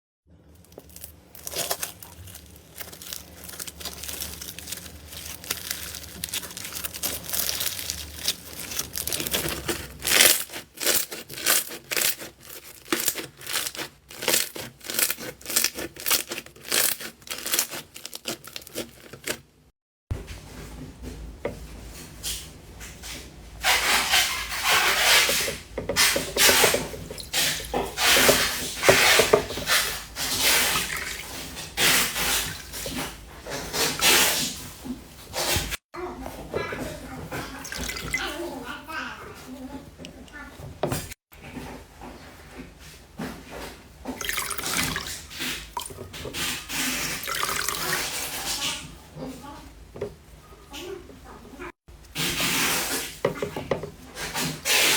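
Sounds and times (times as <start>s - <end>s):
slime squishing and popping: 0.7s - 19.3s.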